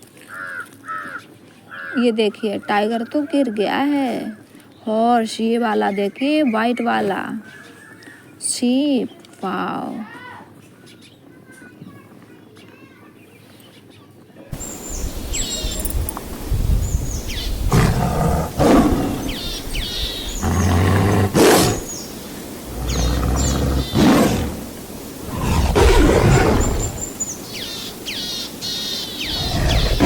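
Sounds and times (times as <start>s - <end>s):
birds chirping: 0.3s - 30.0s
big cats roaring: 17.6s - 22.0s, 22.6s - 27.2s, 29.2s - 30.0s.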